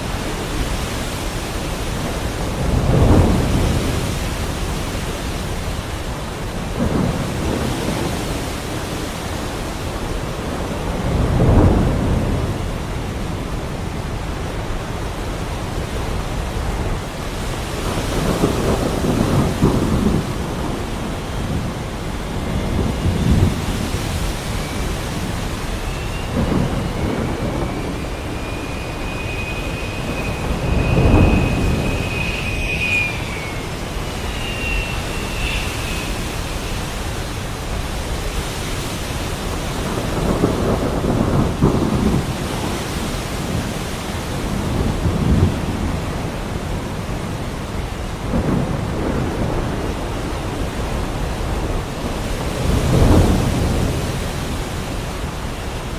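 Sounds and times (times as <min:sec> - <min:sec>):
heavy rain: 0:00.0 - 0:55.9
thunder rumbling: 0:00.0 - 0:55.9
thin high whistling tone: 0:22.2 - 0:38.4.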